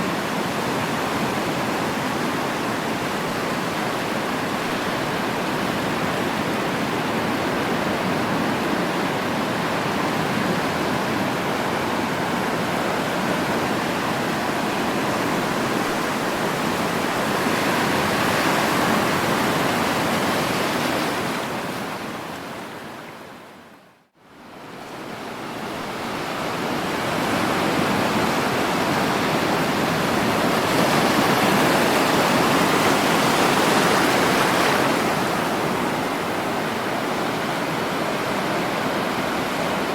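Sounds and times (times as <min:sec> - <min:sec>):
sea waves washing on shore: 0:00.0 - 0:23.7, 0:24.6 - 0:39.9.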